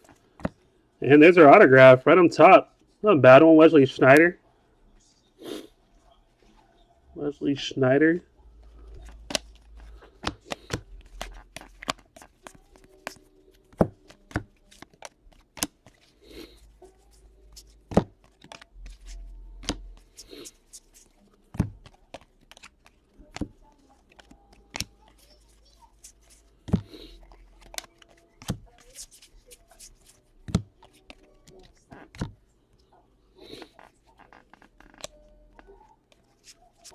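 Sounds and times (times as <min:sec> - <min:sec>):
light rustling of cards: 0:08.6 - 0:32.8, 0:33.4 - 0:36.9
cards snapping and tapping: 0:08.9 - 0:32.4, 0:33.5 - 0:36.9.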